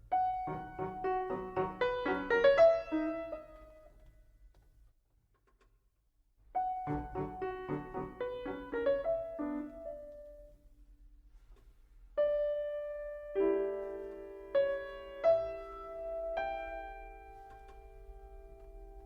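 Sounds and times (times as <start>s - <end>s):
piano music: 0.0s - 3.9s, 6.6s - 10.6s, 12.2s - 19.0s.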